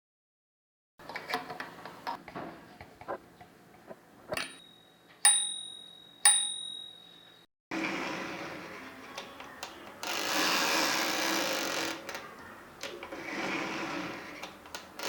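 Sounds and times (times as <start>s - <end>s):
typewriter bell ringing: 4.5s - 7.2s.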